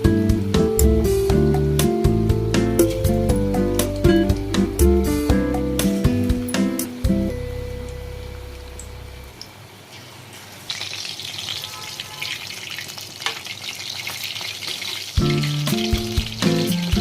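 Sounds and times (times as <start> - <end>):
background music with a beat: 0.0 - 7.6, 15.2 - 17.0
food frying in hot oil: 5.8 - 17.0.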